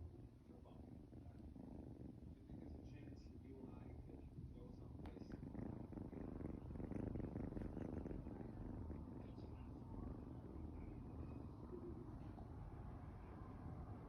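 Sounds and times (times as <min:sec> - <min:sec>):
kitten purring: 0:00.0 - 0:14.0.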